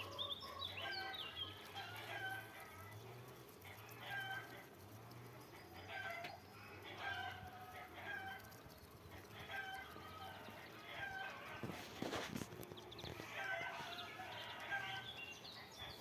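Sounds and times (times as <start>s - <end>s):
domestic fowl calling: 0.0s - 2.8s, 3.6s - 4.8s, 5.9s - 8.6s, 9.2s - 12.5s, 13.1s - 15.2s.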